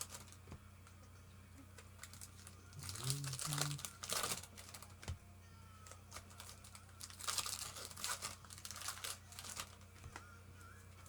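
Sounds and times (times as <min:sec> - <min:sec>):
foil wrappers crinkling and tearing: 0:00.0 - 0:00.4, 0:01.8 - 0:05.1, 0:05.8 - 0:10.3
steady low hum: 0:00.0 - 0:11.0.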